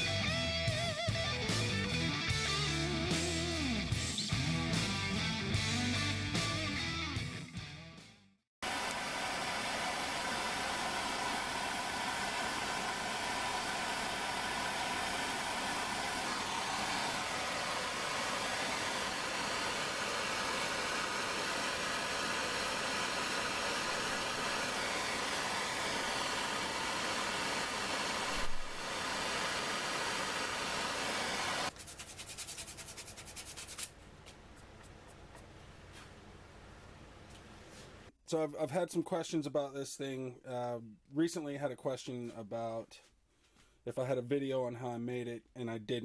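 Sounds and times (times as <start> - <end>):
low hiss: 8.6 - 31.7.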